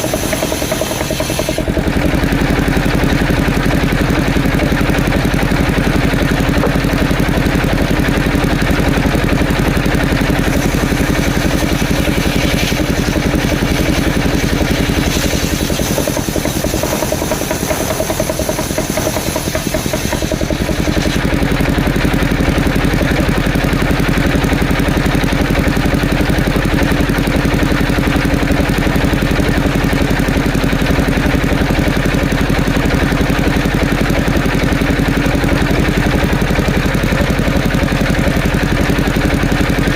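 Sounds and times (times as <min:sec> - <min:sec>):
engine-driven saw running: 0:00.0 - 0:39.9.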